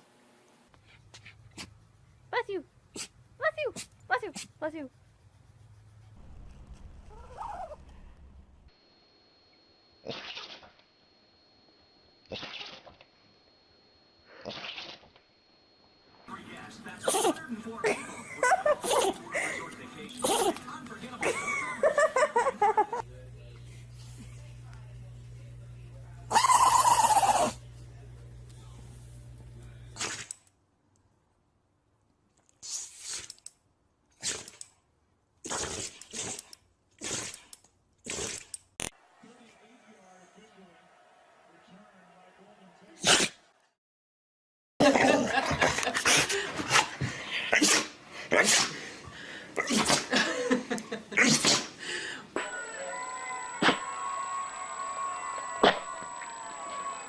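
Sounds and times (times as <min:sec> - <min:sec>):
dog sneezing: 0:30.0 - 0:30.3, 0:32.6 - 0:33.4, 0:34.2 - 0:34.6, 0:35.5 - 0:37.5, 0:38.1 - 0:38.5, 0:47.5 - 0:48.8, 0:49.6 - 0:50.2, 0:51.2 - 0:51.8.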